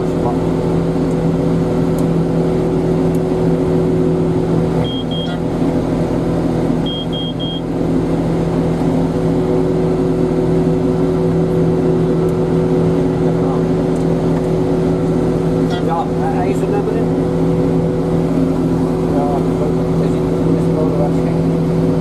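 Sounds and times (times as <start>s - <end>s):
heavy diesel engine running: 0.0s - 22.0s
short high electronic beeps: 4.8s - 5.4s.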